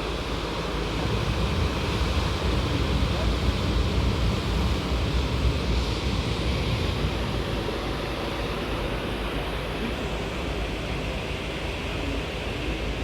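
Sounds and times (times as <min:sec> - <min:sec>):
boat low rumble: 0:00.4 - 0:08.2.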